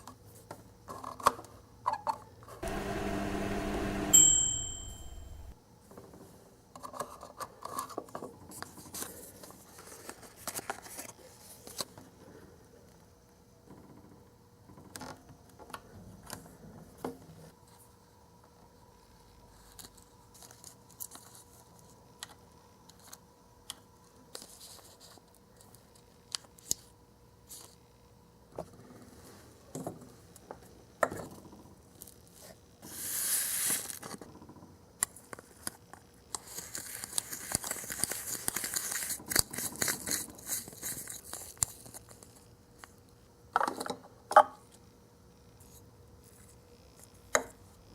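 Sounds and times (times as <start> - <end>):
packaging crinkling and tearing: 36.4 - 42.4.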